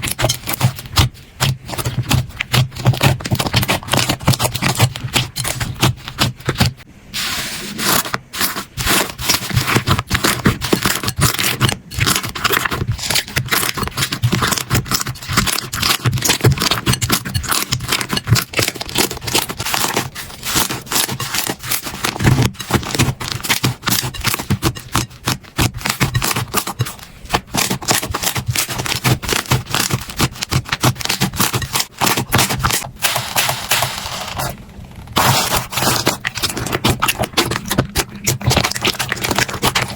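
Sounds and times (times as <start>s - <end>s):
slime crackling and popping: 7.9s - 34.5s, 35.1s - 39.9s.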